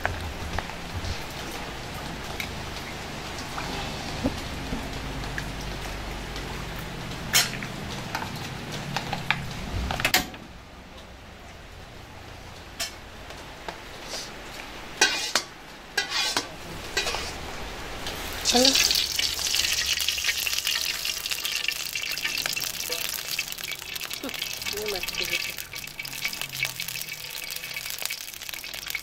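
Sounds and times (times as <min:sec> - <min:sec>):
utensils and dishes clinking: 0:18.4 - 0:29.0.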